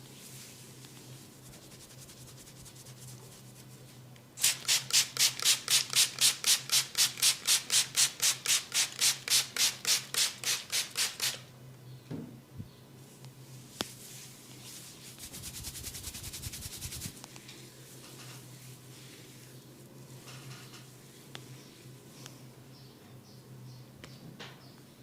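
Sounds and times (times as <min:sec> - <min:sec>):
hands scratching hair on scalp: 0:00.3 - 0:03.9, 0:04.5 - 0:11.4, 0:13.8 - 0:19.6.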